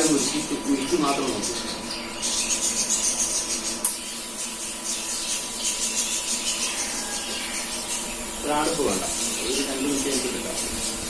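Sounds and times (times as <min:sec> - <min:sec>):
welding arc buzzing and hissing: 0:03.6 - 0:11.0
sharp click: 0:03.8 - 0:04.0.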